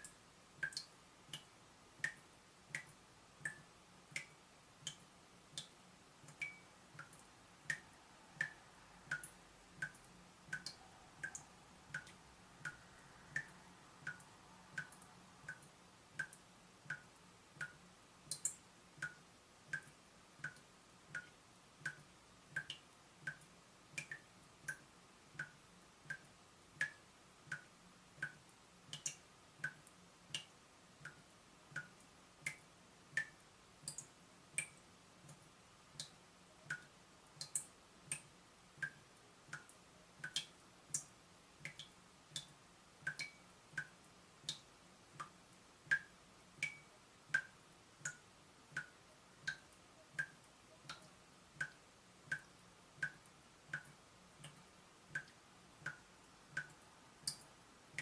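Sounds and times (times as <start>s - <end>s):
water dripping from tap: 0.0s - 58.0s.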